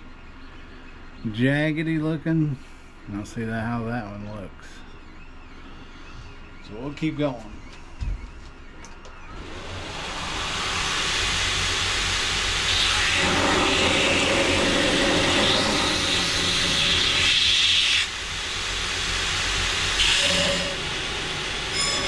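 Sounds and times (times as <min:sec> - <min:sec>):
belt grinder grinding steel: 0:09.4 - 0:18.1, 0:18.8 - 0:22.0.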